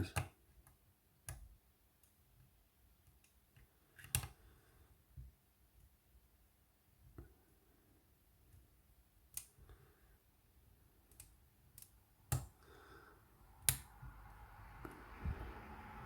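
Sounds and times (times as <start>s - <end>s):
lock pick clicks and taps: 0.1s - 4.4s, 11.1s - 12.5s.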